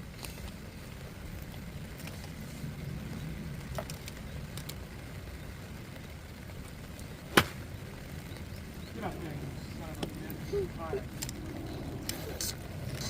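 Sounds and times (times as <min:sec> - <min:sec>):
golf club striking ball: 0:07.3 - 0:07.6
low rumble: 0:07.6 - 0:13.0.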